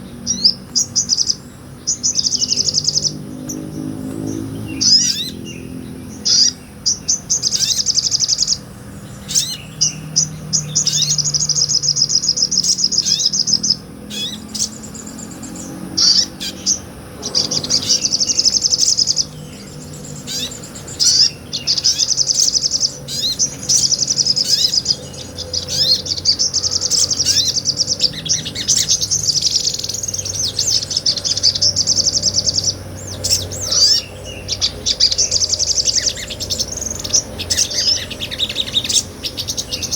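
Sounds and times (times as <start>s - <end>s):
songbird trilling: 0.0s - 39.9s
bird chips: 6.2s - 39.9s.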